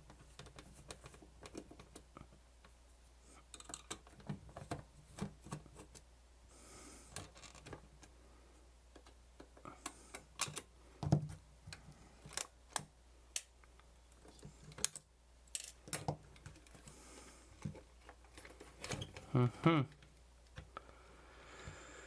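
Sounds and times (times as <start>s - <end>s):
tools and plastic parts clicking: 0.0s - 2.1s, 3.5s - 6.0s, 8.9s - 13.5s, 14.1s - 16.9s.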